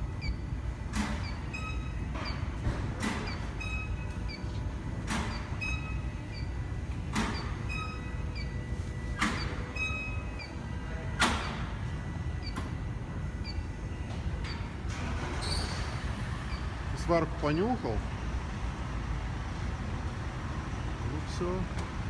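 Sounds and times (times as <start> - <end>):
short electronic beeps: 1.2 - 2.4, 3.3 - 4.6, 5.3 - 6.6, 7.3 - 10.7.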